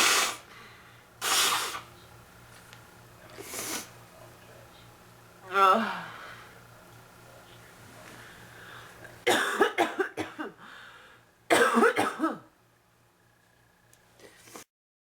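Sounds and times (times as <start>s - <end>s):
woman coughing: 9.3s - 10.6s, 11.5s - 12.5s.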